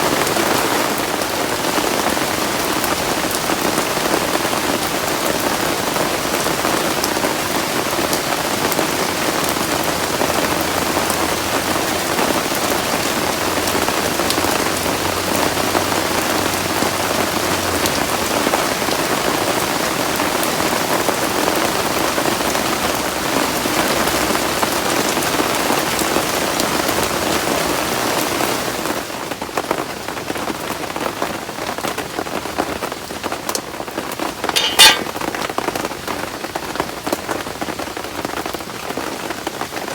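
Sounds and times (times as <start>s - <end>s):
heavy rain: 0.0s - 34.5s, 35.9s - 39.9s
sharp click: 34.5s - 35.1s.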